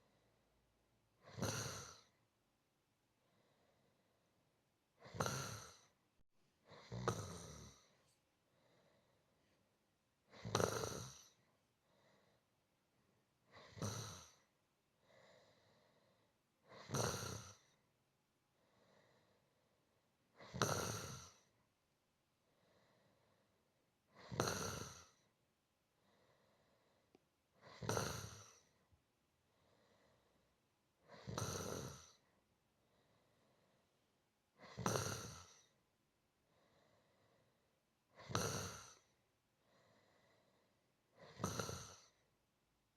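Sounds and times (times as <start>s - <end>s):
person snoring softly: 1.2s - 2.2s, 5.0s - 6.0s, 6.6s - 9.6s, 10.2s - 12.5s, 13.4s - 17.9s, 18.6s - 21.6s, 22.4s - 25.4s, 26.0s - 28.9s, 29.5s - 35.8s, 36.5s - 42.3s
faint breath: 3.2s - 4.3s, 7.7s - 9.7s, 11.5s - 12.7s, 14.9s - 16.5s, 18.5s - 20.0s, 22.4s - 23.8s, 25.2s - 27.6s, 28.3s - 31.4s, 32.1s - 34.1s, 36.4s - 37.8s, 39.0s - 42.2s.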